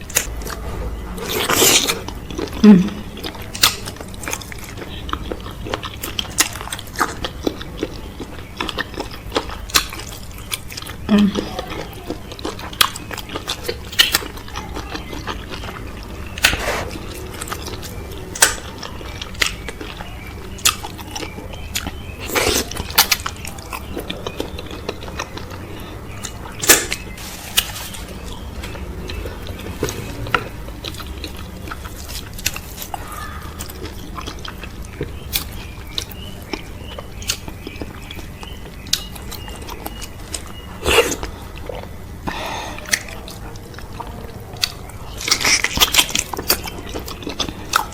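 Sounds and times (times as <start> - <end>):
steady low hum: 0.0 - 47.9
wet chewing and slurping: 0.0 - 47.9.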